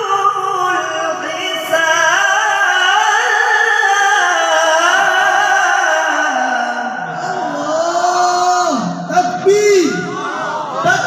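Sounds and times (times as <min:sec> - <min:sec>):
man reciting melodically: 0:00.0 - 0:11.0.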